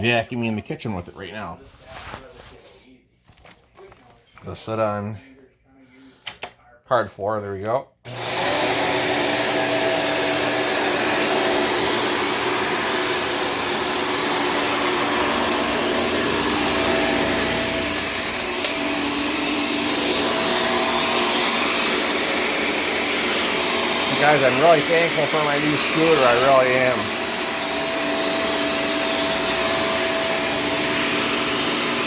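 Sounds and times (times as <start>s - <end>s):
vacuum cleaner motor whining: 8.1s - 32.0s.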